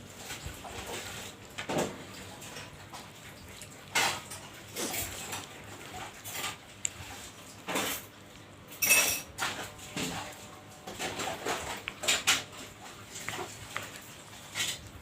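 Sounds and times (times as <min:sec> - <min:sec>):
wet eating sounds: 0:00.0 - 0:15.0
spoon clinking against bowl: 0:08.8 - 0:09.3.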